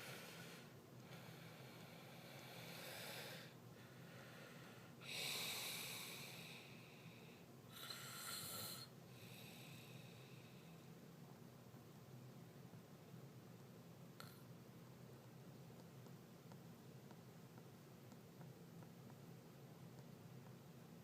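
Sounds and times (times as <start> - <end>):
snort: 7.7 - 9.4
man snoring: 7.8 - 8.9.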